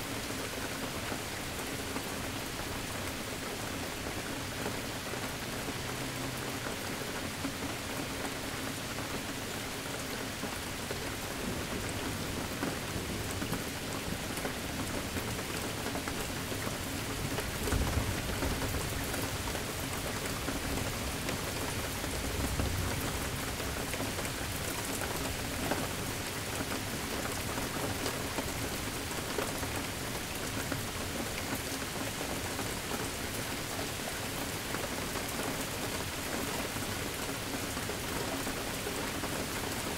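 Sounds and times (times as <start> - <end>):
steady rain falling: 0.0 - 39.9
low rumbles of thunder: 17.5 - 19.6.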